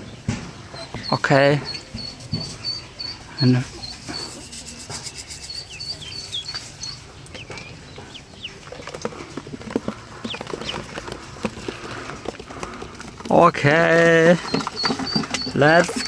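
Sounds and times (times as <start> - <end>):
ducklings peeping: 0.0 - 16.0.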